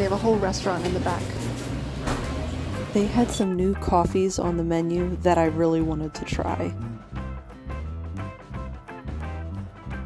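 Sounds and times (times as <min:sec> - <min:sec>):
steady bass rhythm: 0:03.4 - 0:10.0.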